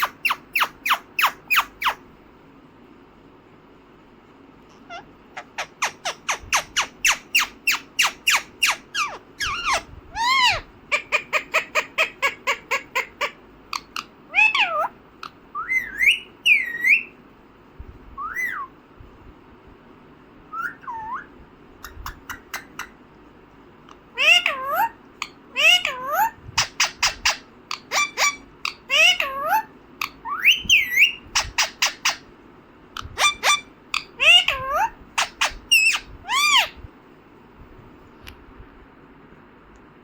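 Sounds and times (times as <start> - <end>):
parrot chirps and squawks: 0.0 - 2.0, 4.7 - 17.2, 20.6 - 23.0, 24.1 - 32.3, 33.0 - 36.8.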